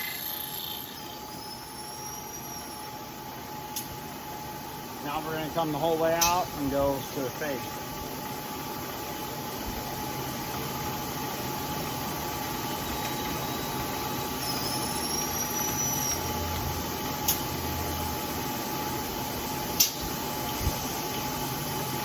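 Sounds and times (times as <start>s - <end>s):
faint high squeal: 0.8s - 2.9s, 14.4s - 16.2s.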